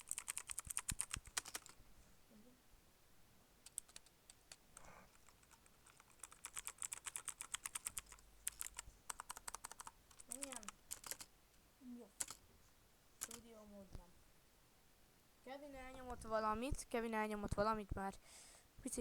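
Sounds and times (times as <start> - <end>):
computer keyboard typing: 0.0 - 1.8, 3.6 - 11.3, 12.2 - 12.4, 13.2 - 13.5.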